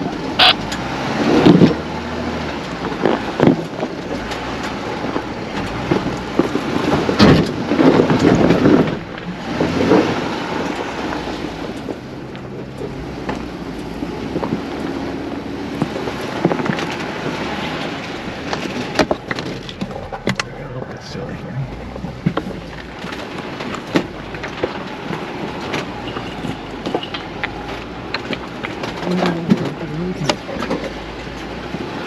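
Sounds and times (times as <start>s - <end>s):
engine running at low crawl: 17.9s - 24.3s.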